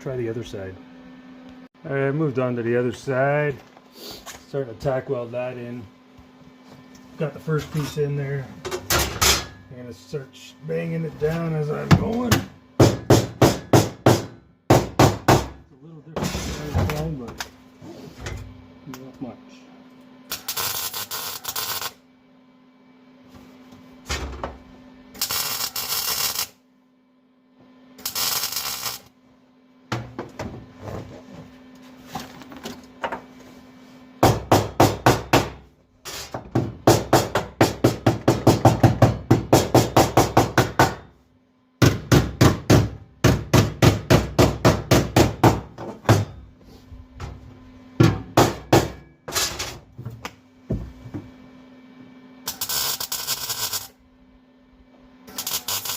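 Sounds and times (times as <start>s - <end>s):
hammer beating sheet metal: 12.3s - 15.6s, 34.2s - 35.6s, 36.8s - 41.1s, 41.8s - 46.4s, 48.0s - 49.1s
tack welding bursts: 20.3s - 22.0s, 25.1s - 26.6s, 28.0s - 29.1s, 52.5s - 54.0s, 55.3s - 55.9s.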